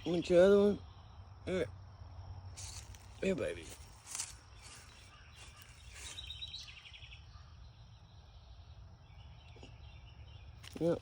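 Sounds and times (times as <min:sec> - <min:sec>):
soft rustles: 0:02.6 - 0:06.4
bird chirping trill: 0:02.6 - 0:11.0.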